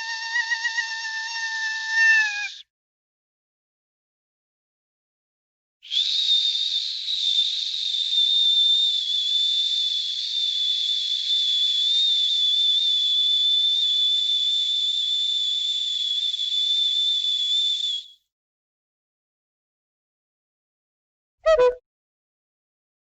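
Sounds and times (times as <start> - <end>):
high-pitched whistle: 5.8 - 18.2, 21.4 - 21.8
hiss: 5.9 - 17.9.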